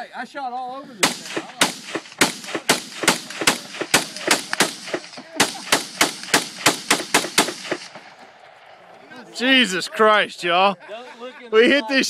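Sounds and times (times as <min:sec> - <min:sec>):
rapid gunfire: 0:01.0 - 0:08.2.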